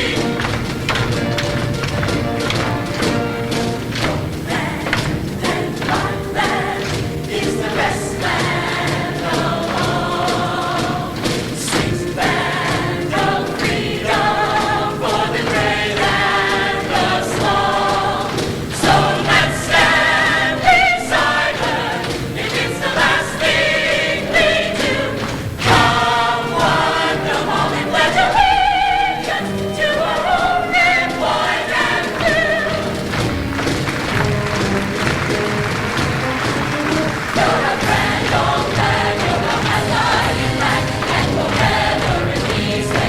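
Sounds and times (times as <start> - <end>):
choir singing: 0.0 - 43.0.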